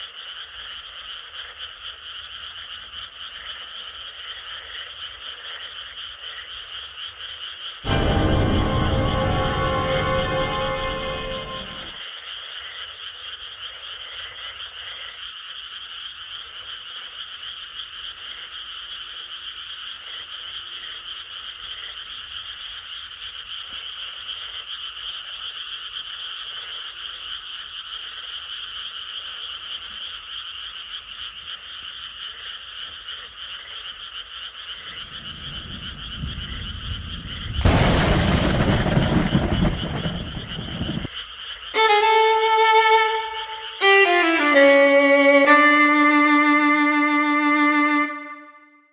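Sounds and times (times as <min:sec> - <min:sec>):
frogs calling: 0:00.0 - 0:07.8, 0:12.0 - 0:41.8
loud rushing blast: 0:07.9 - 0:12.0, 0:37.3 - 0:41.1.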